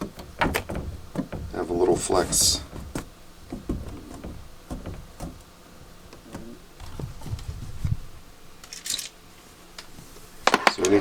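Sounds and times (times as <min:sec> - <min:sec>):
soft low thumps: 0:00.0 - 0:08.4.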